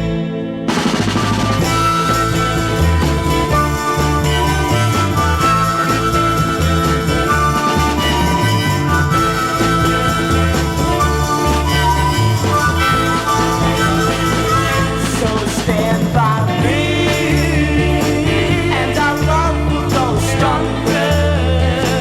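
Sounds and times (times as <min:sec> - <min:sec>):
instrumental garage rock: 0:00.0 - 0:22.0.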